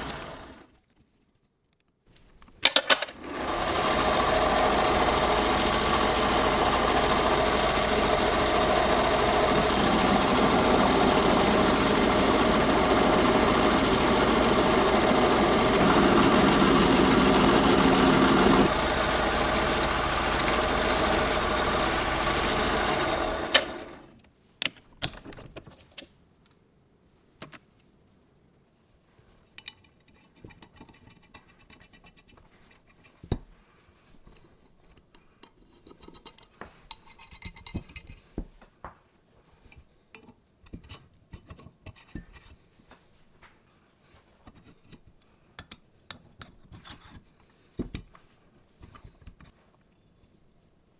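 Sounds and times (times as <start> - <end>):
electric power tool running: 0.0 - 0.7, 2.8 - 24.1
clicks and taps of parts handled: 29.6 - 31.9, 45.6 - 48.2.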